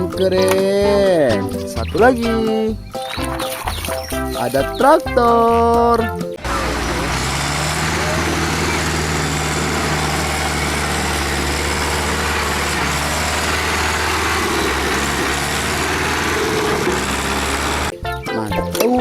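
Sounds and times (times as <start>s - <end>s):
motor humming: 6.4s - 17.9s.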